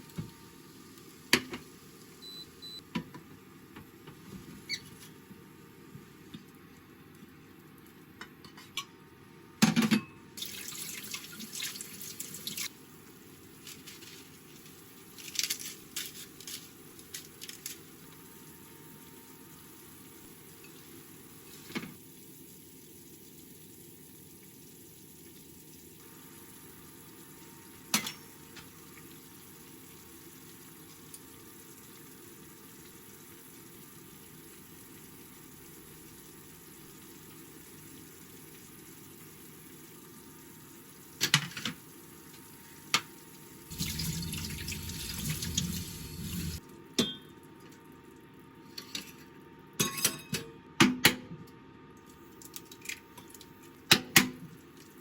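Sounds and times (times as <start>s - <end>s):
tap water running: 10.4s - 12.8s, 27.6s - 46.7s
dishes clinking: 49.8s - 50.6s.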